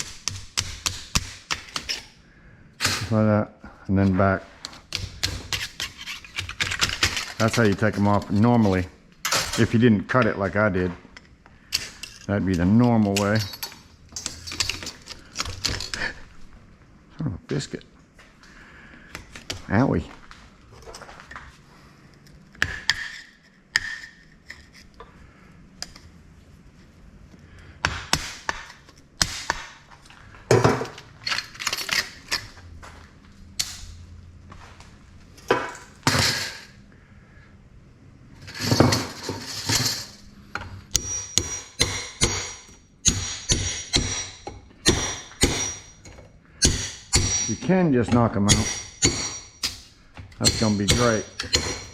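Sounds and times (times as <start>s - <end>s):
metal scraping: 5.2s - 10.9s, 38.4s - 51.9s
steel plates clinking: 11.7s - 16.0s, 40.9s - 51.9s.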